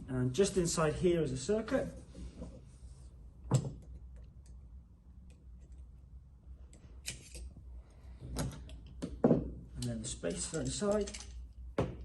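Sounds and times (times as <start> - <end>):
metal parts clicking and knocking: 9.8 - 12.0.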